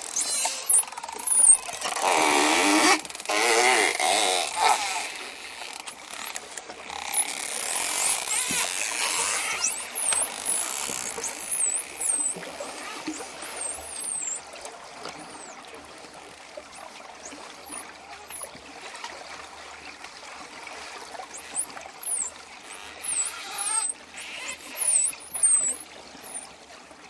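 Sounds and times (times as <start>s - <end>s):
dolphin whistles: 0.0s - 3.0s, 6.0s - 14.6s, 15.2s - 15.7s, 17.2s - 18.5s, 21.4s - 26.6s
buzzy dolphin calls: 6.3s - 14.5s, 21.4s - 26.5s.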